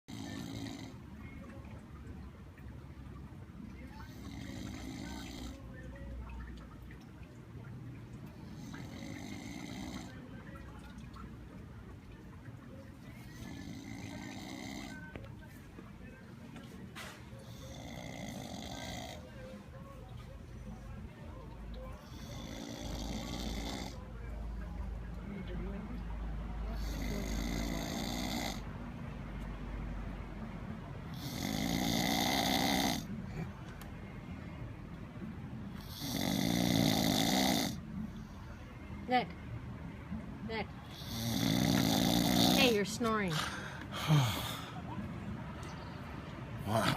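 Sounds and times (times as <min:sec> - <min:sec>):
man snoring: 0:00.1 - 0:01.0, 0:04.2 - 0:05.6, 0:08.6 - 0:10.1, 0:13.3 - 0:15.0, 0:17.5 - 0:19.2, 0:22.1 - 0:24.0, 0:26.8 - 0:28.7, 0:31.2 - 0:33.1, 0:35.8 - 0:37.8, 0:40.9 - 0:42.8, 0:46.6 - 0:46.9.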